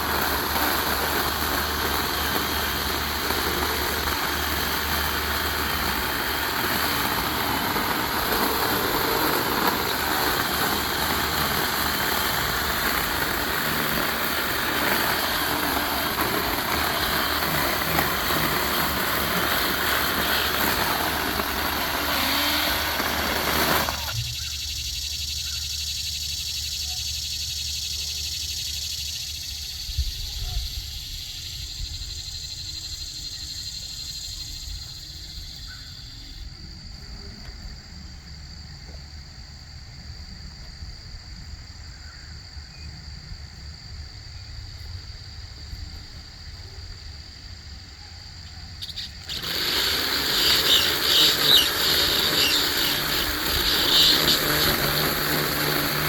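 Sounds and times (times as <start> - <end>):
loud steady machine noise: 0.0 - 24.4, 48.9 - 56.0.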